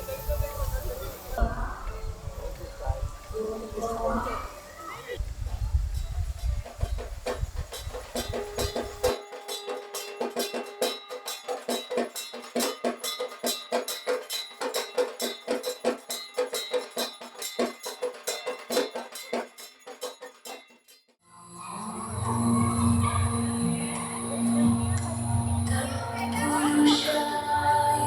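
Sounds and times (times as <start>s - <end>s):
fast even percussion: 0.0s - 21.1s.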